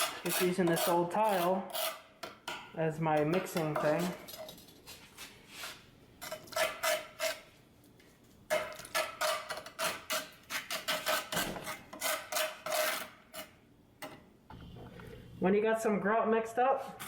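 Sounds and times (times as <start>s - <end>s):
tool scraping grout on tile: 0.0s - 7.6s, 8.5s - 13.6s.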